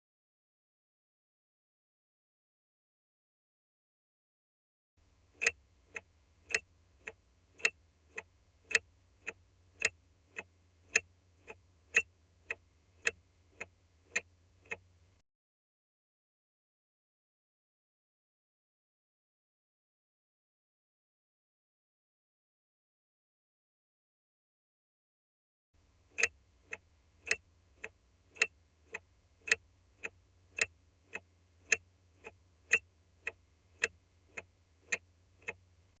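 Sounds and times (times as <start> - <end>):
faint low hum: 5.0 - 15.2, 25.8 - 36.0
car turn signal ticking: 5.4 - 14.9, 26.2 - 35.6.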